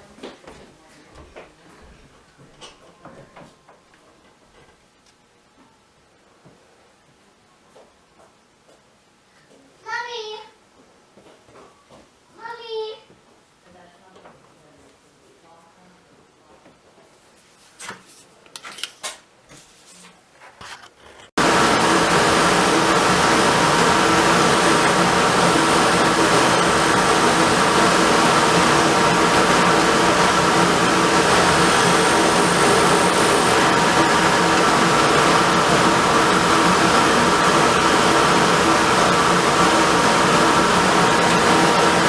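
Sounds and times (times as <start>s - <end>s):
wood lathe running: 21.4s - 42.0s.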